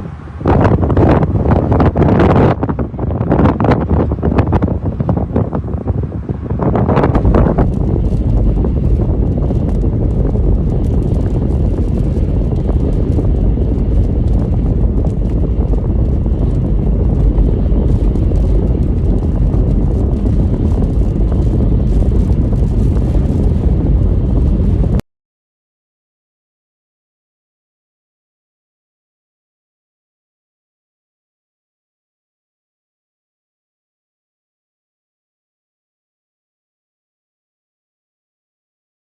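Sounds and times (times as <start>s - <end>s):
strong wind on microphone: 0.0s - 25.0s.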